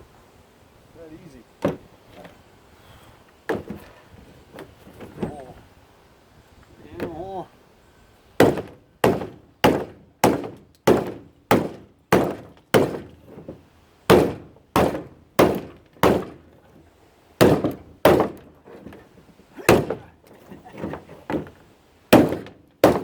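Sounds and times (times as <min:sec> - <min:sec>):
hammer striking plastic housing: 0:19.7 - 0:20.1.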